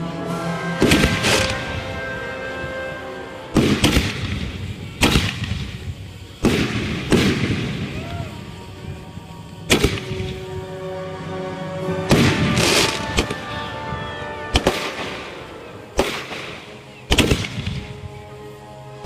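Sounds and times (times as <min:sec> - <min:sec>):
music: 0:00.0 - 0:19.0
firework bangs: 0:00.7 - 0:02.8, 0:03.5 - 0:10.7, 0:12.0 - 0:18.1.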